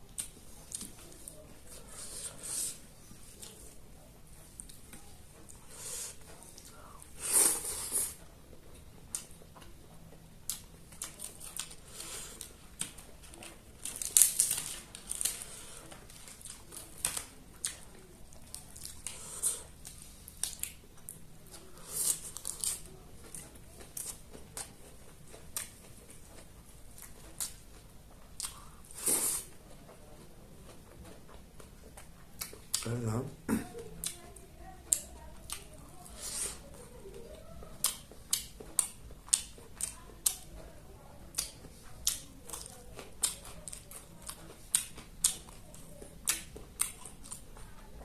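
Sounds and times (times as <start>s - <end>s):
chewing and biting chicken: 41.3s - 48.0s.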